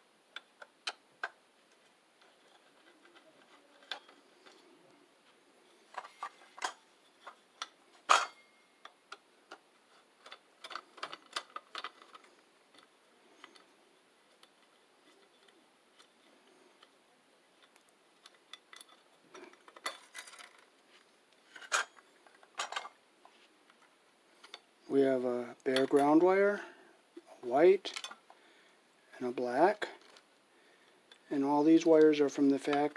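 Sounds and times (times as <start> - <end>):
small parts clicking and tapping: 0.3 - 4.7, 5.9 - 24.7, 27.9 - 28.4.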